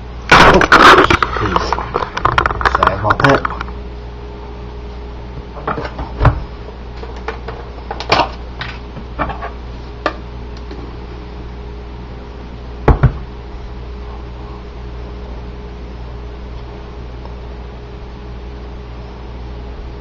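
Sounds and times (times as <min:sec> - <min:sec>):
steady low hum: 0:00.0 - 0:20.0
items knocking on kitchen counter: 0:12.9 - 0:13.2.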